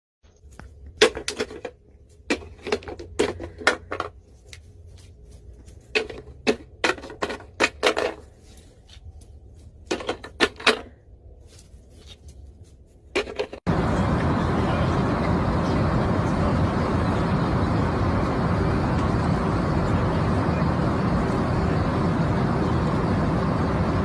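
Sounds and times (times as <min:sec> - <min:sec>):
faint low hum: 0:13.7 - 0:24.0.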